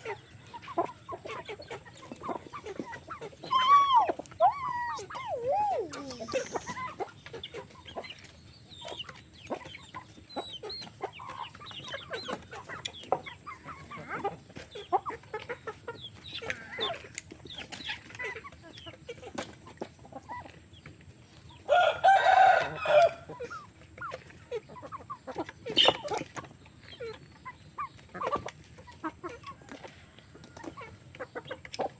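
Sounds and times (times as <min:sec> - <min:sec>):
chickens clucking: 0:00.0 - 0:31.9
rooster crowing: 0:21.7 - 0:23.3.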